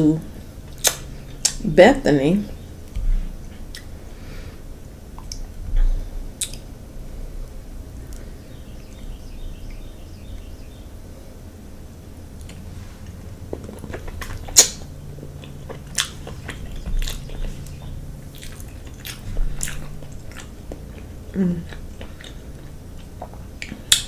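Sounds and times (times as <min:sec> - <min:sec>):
steady low hum: 0:00.0 - 0:24.0
person chewing food: 0:02.8 - 0:04.2, 0:05.1 - 0:06.7, 0:12.4 - 0:24.0
person humming: 0:21.3 - 0:21.8.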